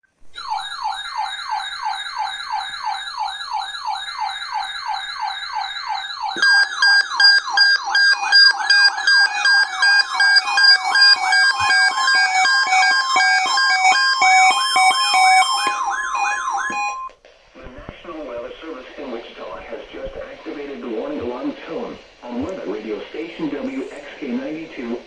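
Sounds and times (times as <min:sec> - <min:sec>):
electronic siren alert tone: 0:00.4 - 0:17.1
loud steady beeping tones: 0:00.4 - 0:17.1.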